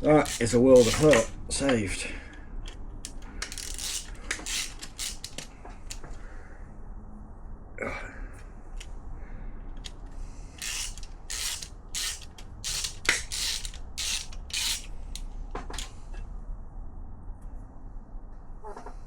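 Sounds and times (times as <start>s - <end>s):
socket ratchet strokes: 0.0s - 1.4s, 2.6s - 6.1s, 10.6s - 15.9s.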